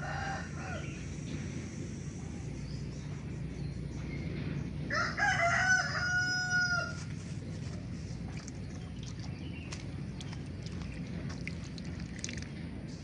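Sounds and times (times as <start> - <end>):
rooster crowing: 0.0 - 0.9, 4.9 - 7.1.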